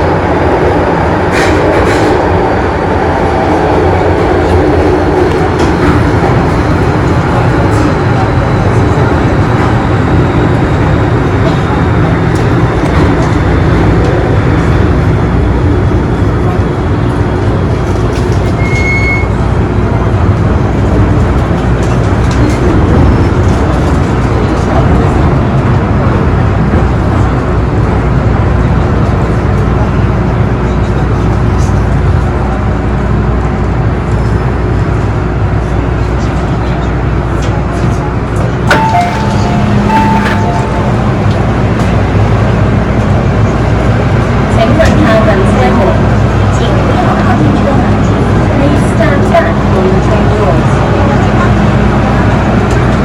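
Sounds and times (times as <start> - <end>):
train rumbling in tunnel: 0.0 - 53.0
brief tones: 18.6 - 19.4, 38.7 - 41.3.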